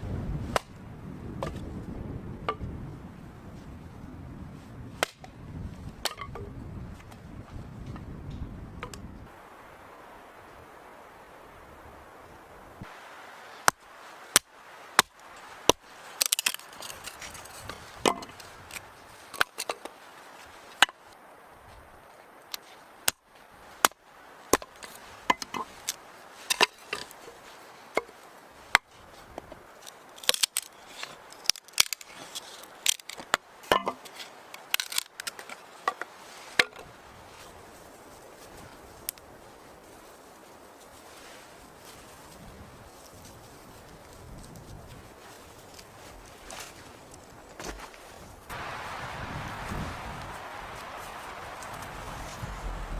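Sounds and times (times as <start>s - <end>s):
wood being chopped: 0.5s - 0.8s, 5.0s - 5.4s, 6.0s - 6.5s.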